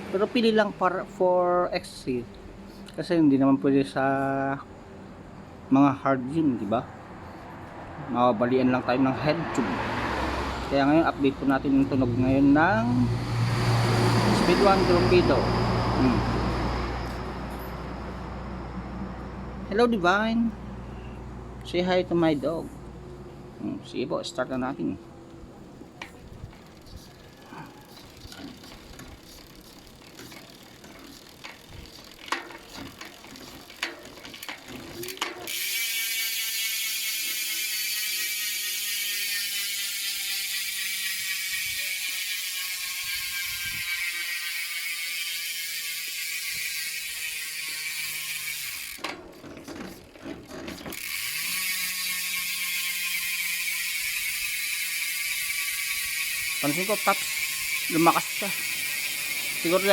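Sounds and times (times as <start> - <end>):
bicycle hub ratcheting clicks: 25.9 - 59.9.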